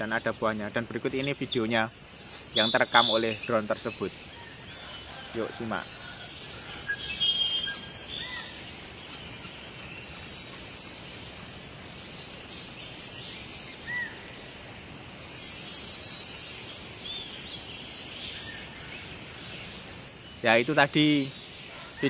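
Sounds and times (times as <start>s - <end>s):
bird chirps: 0.0s - 14.6s, 15.2s - 22.0s
long high-pitched bird call: 1.2s - 11.2s, 12.6s - 14.4s, 15.2s - 22.0s.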